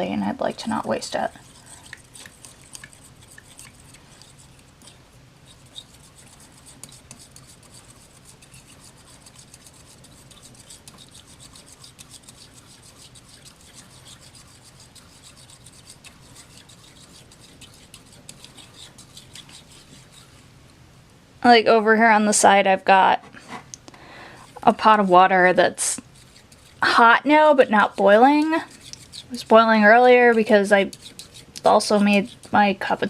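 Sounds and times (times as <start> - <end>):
low steady hum: 0.0 - 33.0
glue scraping and rubbing: 0.8 - 20.5, 25.9 - 32.6.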